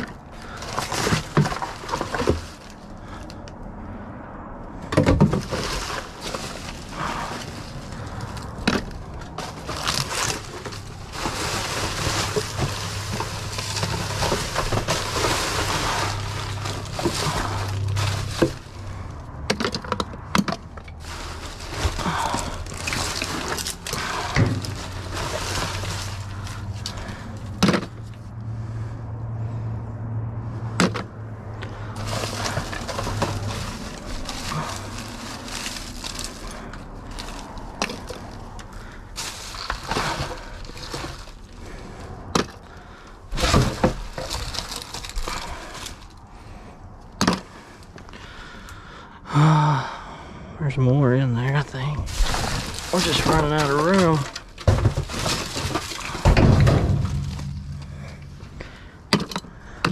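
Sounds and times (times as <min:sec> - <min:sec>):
objects clanking in dumpster: 0:00.0 - 0:03.4, 0:04.7 - 0:28.2, 0:30.8 - 0:46.6, 0:51.7 - 0:59.9
rustling and crunching: 0:00.0 - 0:29.6, 0:30.6 - 0:48.8, 0:51.2 - 0:59.9
low steady hum: 0:51.4 - 0:59.9.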